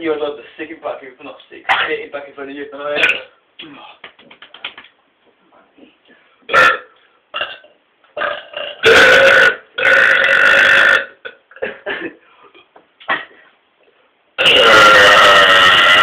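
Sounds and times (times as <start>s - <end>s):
man burping loudly: 3.0s - 3.4s, 6.5s - 11.9s, 14.4s - 16.0s.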